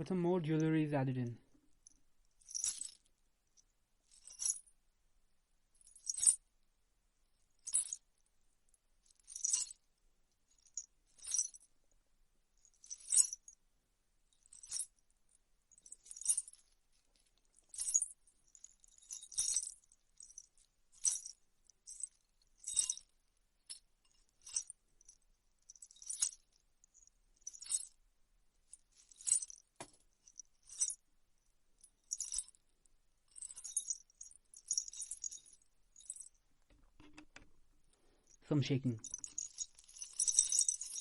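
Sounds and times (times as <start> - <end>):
metal jewellery jingling: 1.8 - 3.0, 4.1 - 4.6, 10.6 - 11.7, 12.6 - 13.5, 14.4 - 15.0, 15.7 - 16.8, 17.4 - 23.1, 23.7 - 28.0, 28.9 - 31.0, 31.9 - 32.6, 33.3 - 37.5, 38.2 - 41.0.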